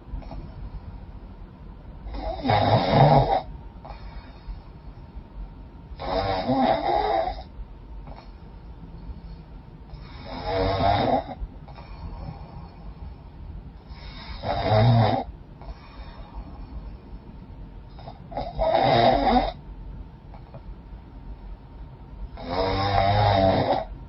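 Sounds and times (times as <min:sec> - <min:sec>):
woman breathing quietly: 0:00.0 - 0:02.4, 0:03.5 - 0:05.7, 0:07.0 - 0:10.4, 0:11.4 - 0:14.5, 0:15.3 - 0:18.4
woman snoring: 0:02.1 - 0:04.4, 0:06.0 - 0:07.5, 0:10.0 - 0:12.7, 0:13.9 - 0:16.3, 0:17.9 - 0:19.6, 0:22.4 - 0:23.9.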